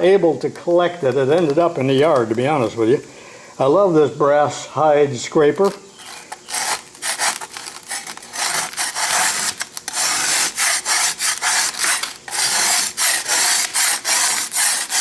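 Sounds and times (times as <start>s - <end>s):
scraper rasping on metal: 6.0s - 15.0s.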